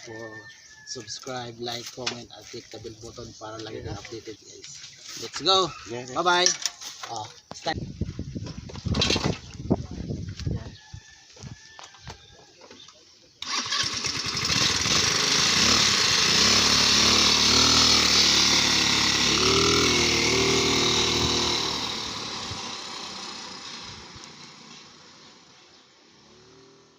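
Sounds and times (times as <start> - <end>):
scooter engine starting and revving: 13.4 - 26.9.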